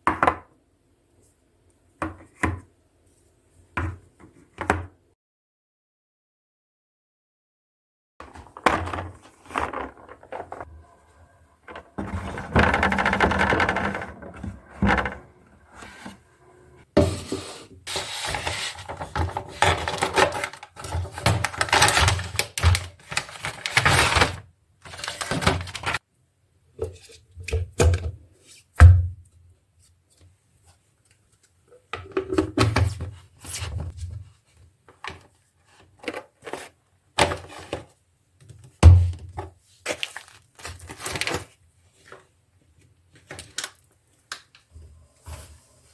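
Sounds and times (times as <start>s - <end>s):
containers rustling and clattering: 8.2s - 26.0s
containers knocking: 11.7s - 15.6s.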